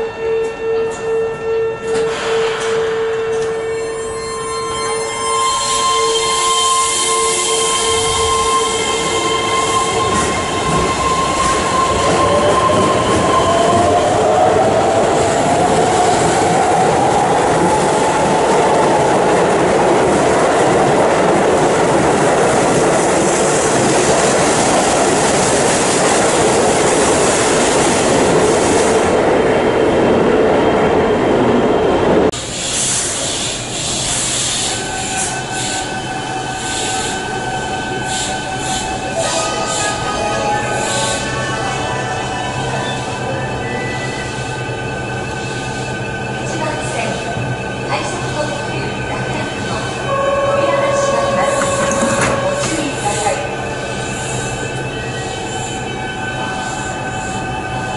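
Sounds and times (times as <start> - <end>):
train wheel and running noise: 31.2 - 41.3, 42.2 - 57.9
steady tones: 37.6 - 53.8.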